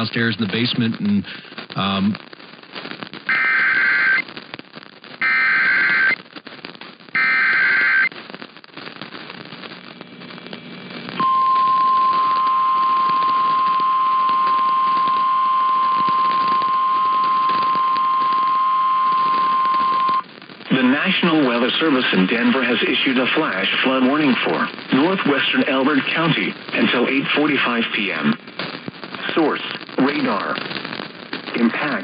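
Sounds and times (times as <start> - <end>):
buzzy digital data tones: 3.3 - 4.2, 5.2 - 6.2, 7.1 - 8.1, 11.2 - 20.3
steady warning alarm tone: 7.2 - 8.1.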